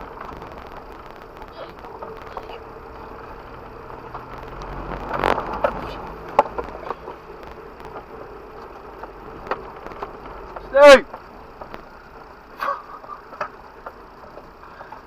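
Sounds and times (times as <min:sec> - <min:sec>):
vehicle engine and drivetrain noise: 0:00.0 - 0:15.0
vehicle body knocks and clatters: 0:05.0 - 0:12.2.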